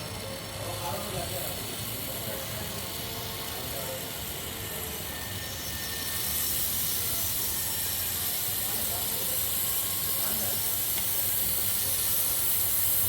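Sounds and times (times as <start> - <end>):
aerosol spray hissing: 5.5 - 13.0.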